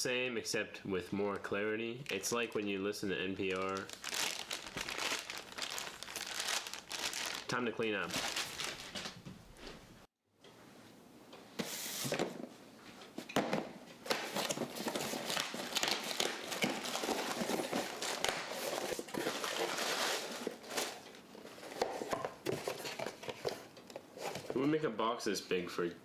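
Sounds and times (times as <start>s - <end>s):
packing material crinkling: 3.4s - 9.2s, 14.1s - 21.0s.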